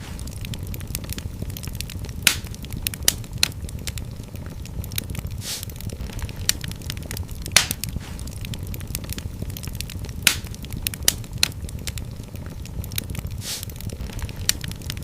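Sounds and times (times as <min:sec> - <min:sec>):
wood fire crackling: 0:00.0 - 0:15.0
short hiss: 0:05.4 - 0:05.7, 0:13.4 - 0:13.7.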